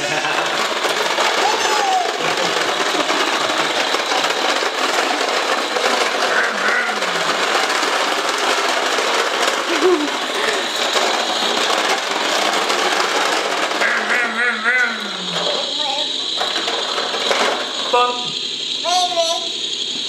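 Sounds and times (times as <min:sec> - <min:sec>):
toy lawn mower rattling and whirring: 0:00.0 - 0:20.0.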